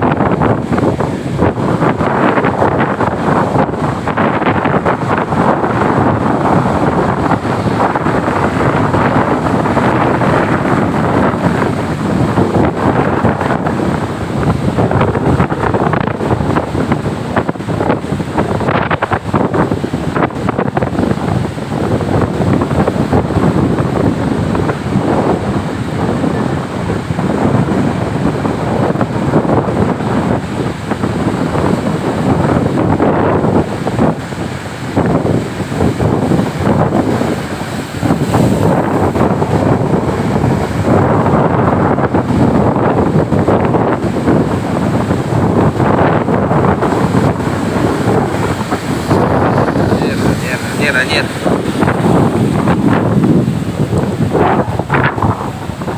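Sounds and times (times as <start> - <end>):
heavy surf rushing: 0.0 - 55.9
wind buffeting microphone: 0.0 - 55.9.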